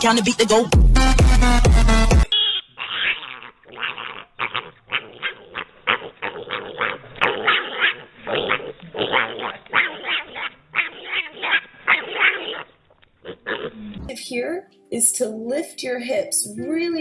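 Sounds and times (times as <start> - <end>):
dog growling and yipping: 2.8 - 14.1.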